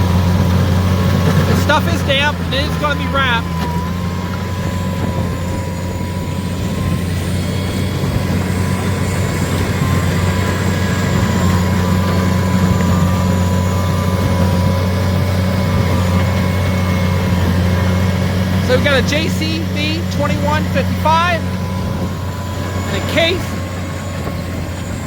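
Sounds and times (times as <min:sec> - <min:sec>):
tractor and baler engine drone: 0:00.0 - 0:25.0
thin steady whine: 0:01.6 - 0:25.0.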